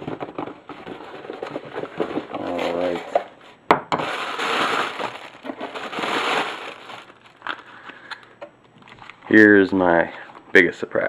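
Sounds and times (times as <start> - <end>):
packaging rustling and crinkling: 0.0 - 3.3, 4.0 - 8.3.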